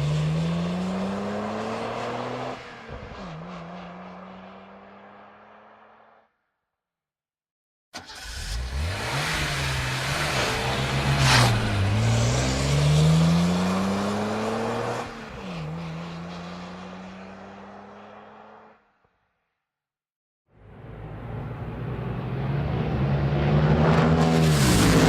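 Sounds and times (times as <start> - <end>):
sports car engine accelerating: 0.0 - 2.6, 8.1 - 18.7, 20.6 - 25.0
engine burst: 8.0 - 9.9.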